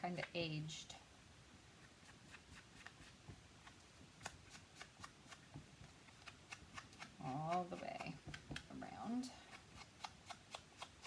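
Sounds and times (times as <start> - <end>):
sponge dabbing on paper: 1.7 - 11.0.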